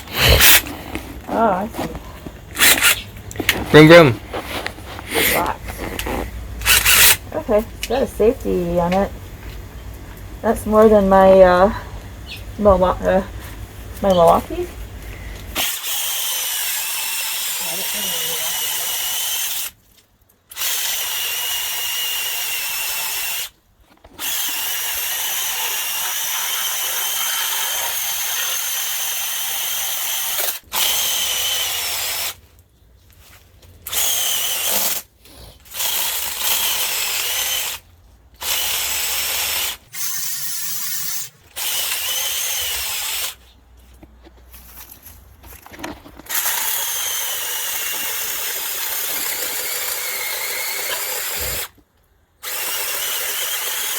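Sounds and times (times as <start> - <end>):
electric mini chainsaw whining: 0.0 - 1.5, 2.5 - 3.0, 5.1 - 7.3, 15.5 - 19.8, 20.5 - 23.5, 24.2 - 32.4, 33.9 - 37.8, 38.4 - 43.4, 46.3 - 51.8, 52.4 - 53.9.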